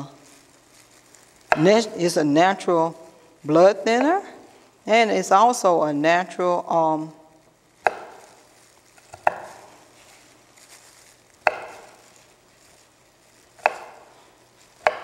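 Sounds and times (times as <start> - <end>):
knife chopping on cutting board: 7.8 - 8.4, 9.1 - 9.7, 11.4 - 12.0, 13.6 - 14.1, 14.8 - 15.0.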